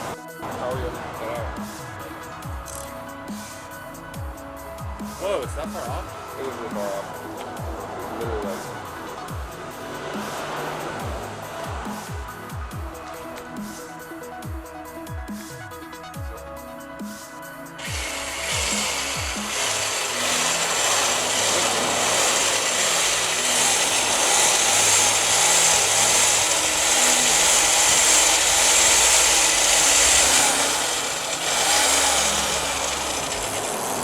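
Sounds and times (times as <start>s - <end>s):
power tool whirring: 2.5s - 3.6s, 17.8s - 34.0s.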